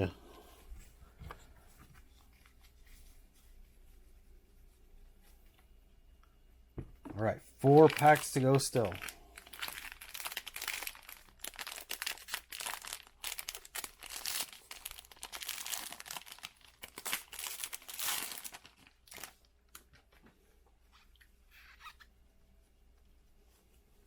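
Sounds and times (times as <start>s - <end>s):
card pack wrapper tearing and crinkling: 7.6s - 19.8s.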